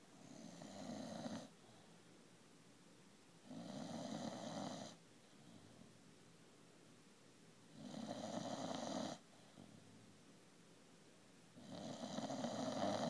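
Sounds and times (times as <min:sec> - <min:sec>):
dog snoring: 0:00.1 - 0:01.5, 0:03.4 - 0:05.0, 0:07.7 - 0:09.2, 0:11.6 - 0:13.0.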